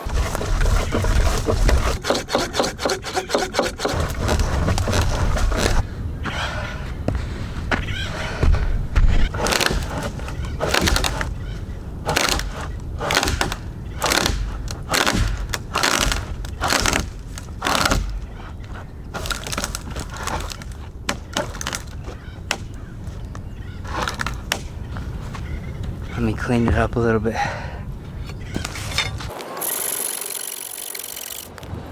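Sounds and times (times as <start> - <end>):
hand saw cutting wood: 0.0 - 5.8, 9.3 - 22.8, 23.8 - 24.7.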